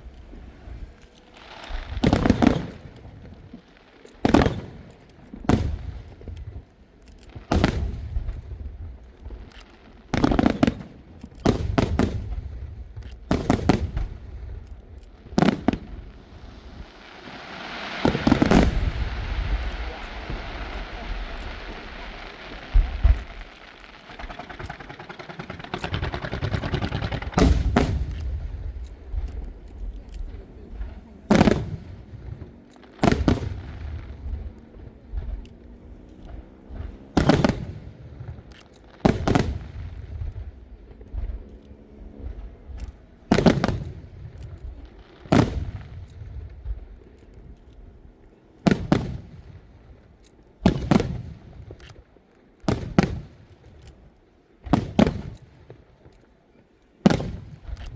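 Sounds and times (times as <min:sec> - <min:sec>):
crackling hiss: 0:00.0 - 0:57.9
firework booms with echo: 0:01.5 - 0:06.7, 0:07.3 - 0:41.4, 0:42.2 - 0:47.0, 0:48.6 - 0:49.9, 0:50.6 - 0:51.9, 0:52.6 - 0:53.8, 0:54.6 - 0:55.9, 0:57.0 - 0:57.9.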